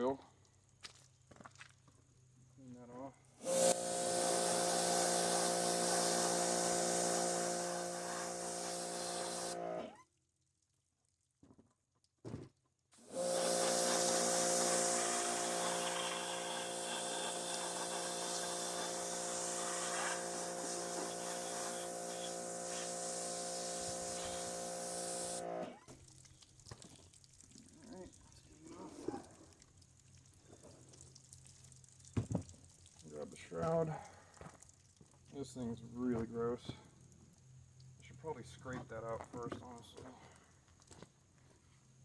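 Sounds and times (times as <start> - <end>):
water jet hissing: 3.4 - 9.8, 13.0 - 25.6
pressure washer pump hum: 3.4 - 9.9, 13.0 - 25.7.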